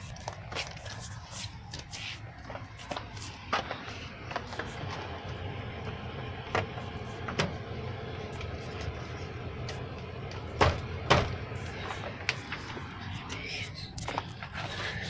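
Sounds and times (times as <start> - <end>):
steady low hum: 0.0 - 15.0
knocks and clunks: 10.6 - 11.4.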